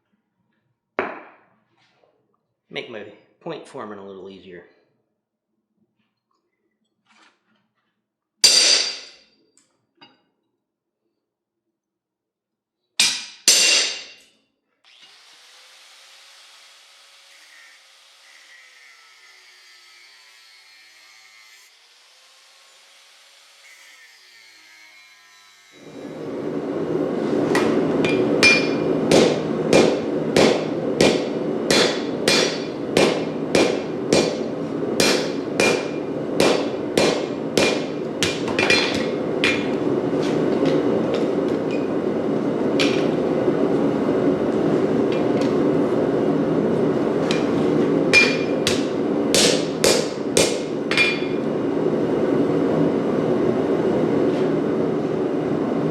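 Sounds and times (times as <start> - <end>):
steady rushing roar: 25.9 - 55.9
hammer ringing on anvil: 28.1 - 39.7, 48.2 - 51.4.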